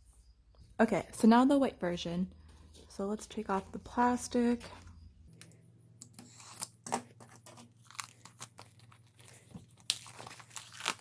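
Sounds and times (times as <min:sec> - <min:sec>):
plastic wrap crinkling: 0:06.4 - 0:11.0
plastic wrap cracking: 0:07.6 - 0:11.0.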